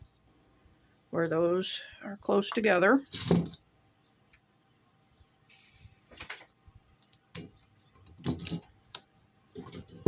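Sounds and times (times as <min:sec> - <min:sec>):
soldering iron sizzling hiss: 0:05.5 - 0:06.4.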